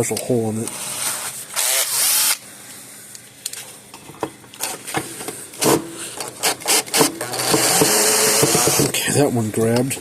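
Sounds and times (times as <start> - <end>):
power driver bursts: 5.5 - 9.1
bit scraping and clicking: 5.6 - 9.1.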